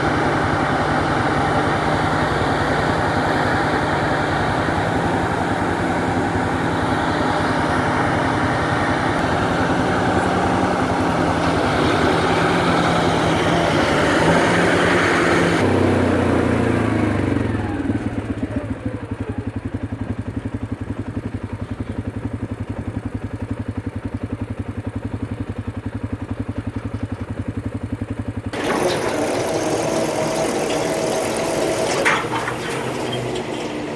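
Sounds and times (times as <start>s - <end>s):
machinery whir winding down: 0.0s - 19.3s, 28.5s - 33.9s
harvester engine running: 0.0s - 33.9s.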